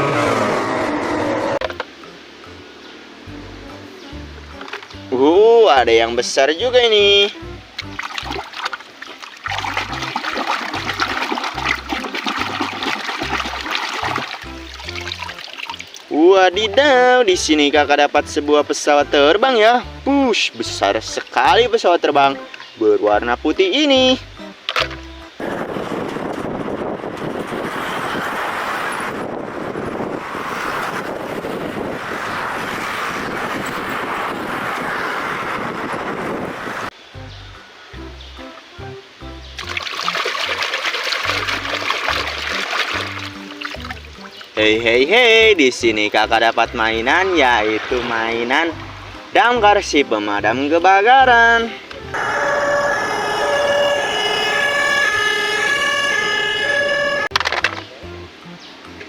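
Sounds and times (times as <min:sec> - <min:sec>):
water splashing and running: 0:07.8 - 0:16.1, 0:39.6 - 0:44.6.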